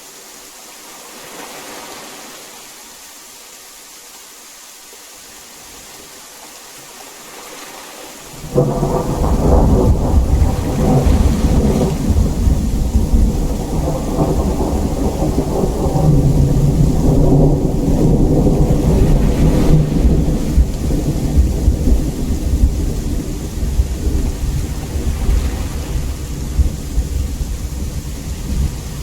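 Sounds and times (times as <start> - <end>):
rain hissing: 0.0 - 29.0
thunder rumbling: 8.3 - 29.0.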